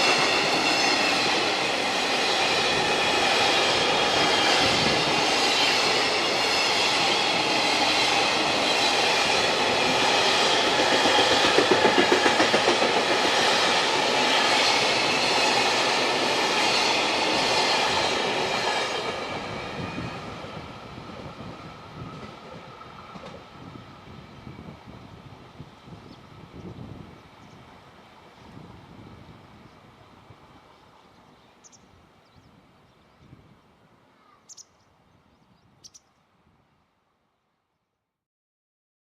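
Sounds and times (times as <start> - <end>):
train wheels clattering over rail joints: 8.6 - 15.7.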